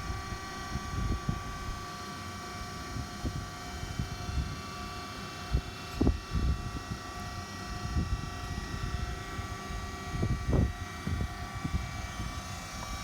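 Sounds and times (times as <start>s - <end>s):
grinder machine hum: 0.0s - 1.9s.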